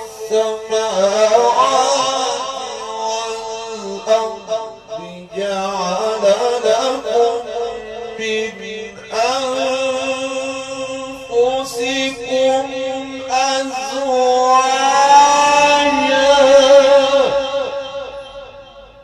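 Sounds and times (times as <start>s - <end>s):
man chanting melodically: 0.0s - 19.0s.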